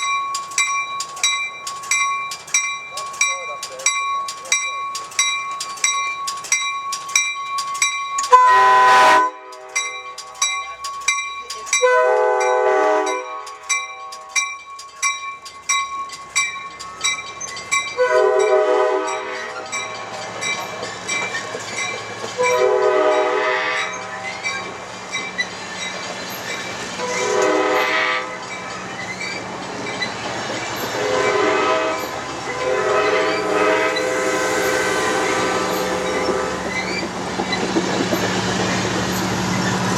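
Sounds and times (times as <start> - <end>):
crossing warning bell ringing: 0.0 - 39.9
train wheel clatter: 0.0 - 39.9
locomotive engine rumble: 0.4 - 39.9
locomotive chime horn: 8.2 - 11.0, 11.7 - 14.6, 17.9 - 19.9, 22.3 - 24.6, 27.0 - 28.6, 30.8 - 37.1.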